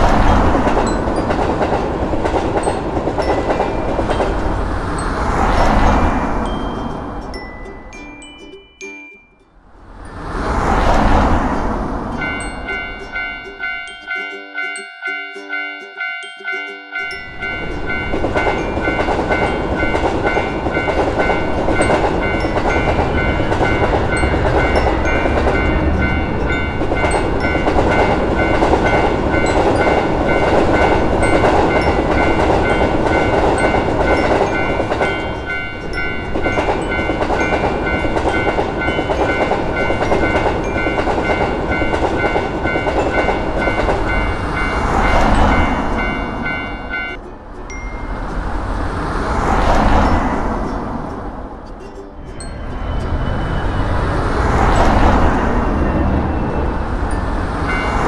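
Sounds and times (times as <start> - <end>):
train wheels clattering: 0.0 - 8.0, 17.1 - 47.2
level-crossing warning bells: 0.0 - 58.0.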